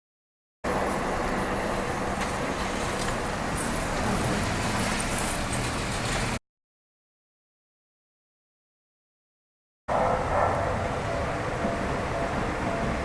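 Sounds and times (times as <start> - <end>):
vehicle rushing rumble: 0.7 - 6.4.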